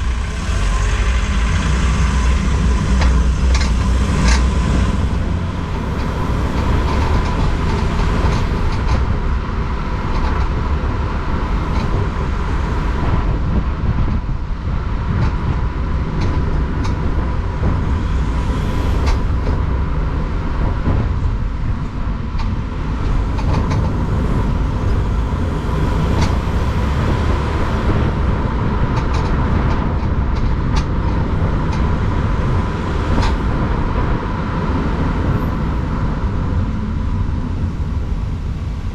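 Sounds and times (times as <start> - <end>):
high steady whine: 0.0 - 28.6
van low rumble: 0.0 - 38.9.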